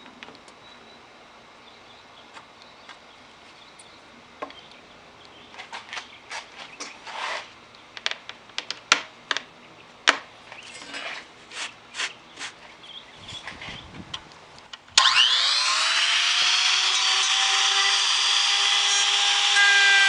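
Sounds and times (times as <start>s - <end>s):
scraping strokes on wood: 5.6s - 7.5s, 10.6s - 12.6s.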